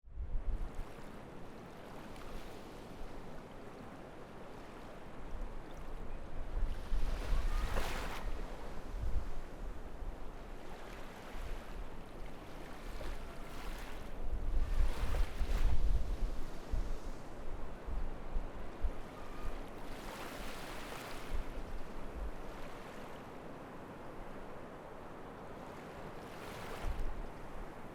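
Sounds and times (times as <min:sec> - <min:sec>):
wind on microphone: 0:00.0 - 0:01.0, 0:05.3 - 0:12.0, 0:12.8 - 0:22.7, 0:26.4 - 0:27.9
waves washing on shore: 0:06.7 - 0:27.9.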